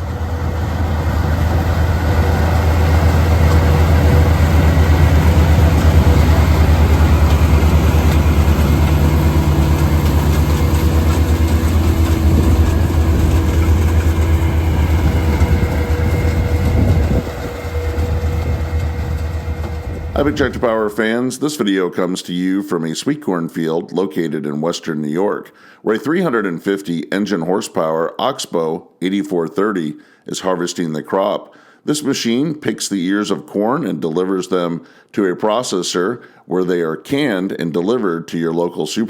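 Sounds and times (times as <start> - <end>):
diesel engine rumble: 0.0 - 21.0.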